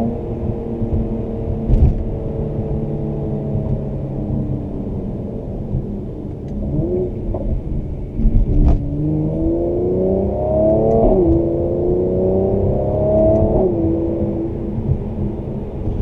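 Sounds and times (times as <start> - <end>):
car engine from inside cabin: 0.0 - 16.0.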